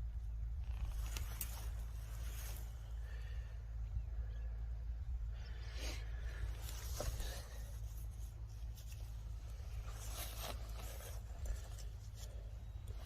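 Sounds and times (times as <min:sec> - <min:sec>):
scrapes and rustles: 0:00.6 - 0:03.0, 0:05.7 - 0:13.0.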